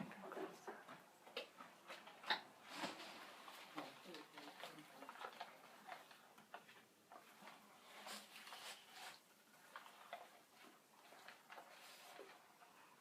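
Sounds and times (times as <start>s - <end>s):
faint ticks and scratching: 0.1s - 13.0s.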